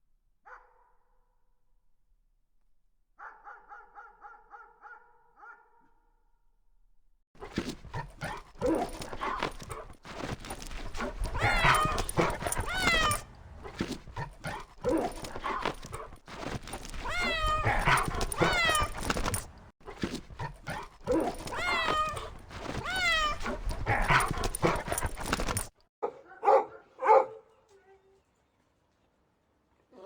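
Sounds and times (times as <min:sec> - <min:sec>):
pet animal high-pitched cries: 0:10.8 - 0:13.3, 0:16.9 - 0:19.5, 0:21.1 - 0:25.6.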